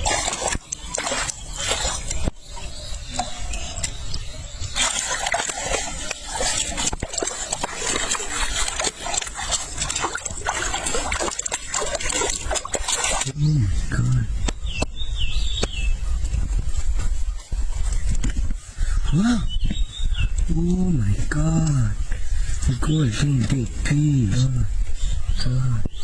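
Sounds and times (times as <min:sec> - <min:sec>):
water splashing and sloshing: 0:00.0 - 0:14.9.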